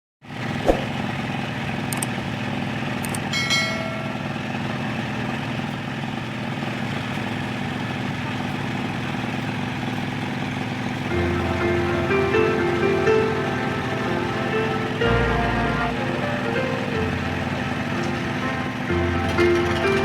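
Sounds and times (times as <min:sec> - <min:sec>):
concrete mixer engine running: 0:00.3 - 0:20.0
short ringing knock: 0:03.4 - 0:04.2.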